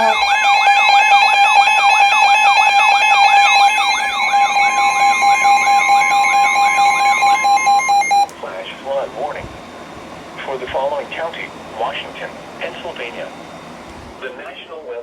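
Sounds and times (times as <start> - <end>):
emergency alert tone: 0.0 - 8.3.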